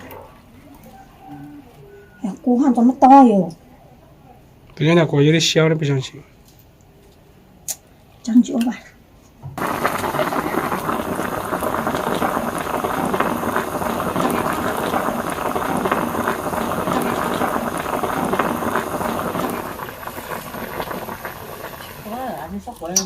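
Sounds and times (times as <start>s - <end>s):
broth boiling in a pot: 9.6s - 23.0s.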